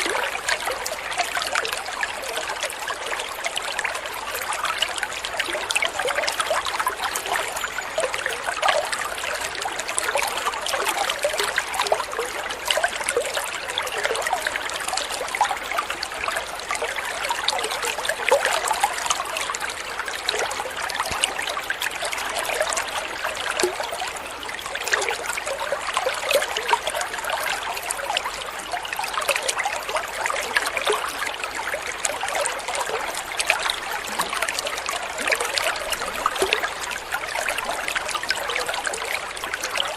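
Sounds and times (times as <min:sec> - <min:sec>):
water trickling and gurgling: 0:00.0 - 0:39.9.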